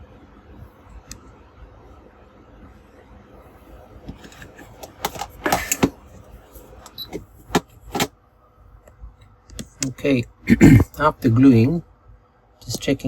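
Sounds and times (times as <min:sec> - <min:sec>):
clicks and knocks of tools handled: 0:04.1 - 0:06.0.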